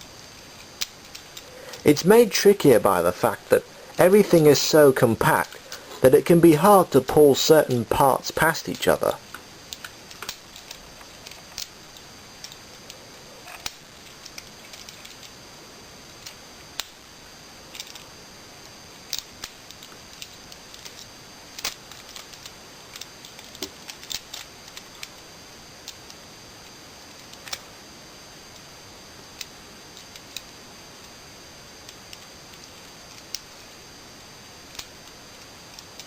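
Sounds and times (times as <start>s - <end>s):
plastic toy parts clicking: 13.5s - 15.3s, 17.7s - 18.1s, 19.1s - 25.2s, 27.2s - 27.6s, 34.7s - 36.0s.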